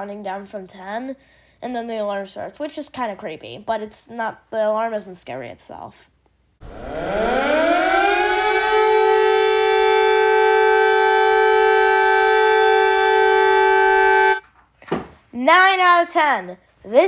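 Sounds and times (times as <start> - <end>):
warning siren winding up: 6.6 - 14.4.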